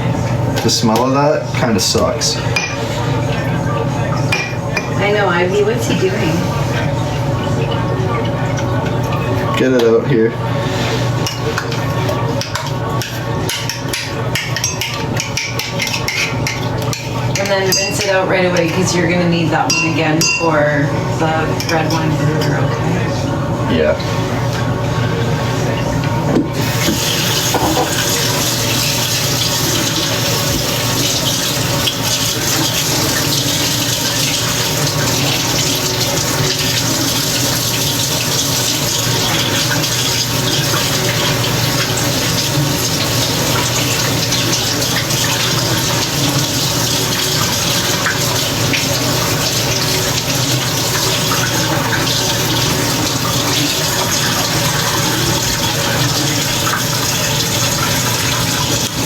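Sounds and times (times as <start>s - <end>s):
kitchen faucet running into sink: 11.2s - 20.6s, 26.4s - 59.0s.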